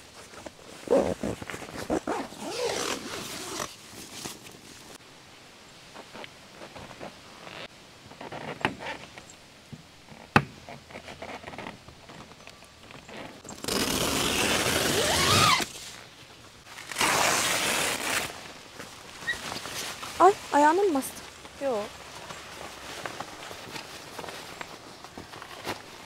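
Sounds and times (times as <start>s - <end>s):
fabric rustling: 0.0s - 5.0s, 10.9s - 26.0s
knocks of tent poles: 8.1s - 13.6s.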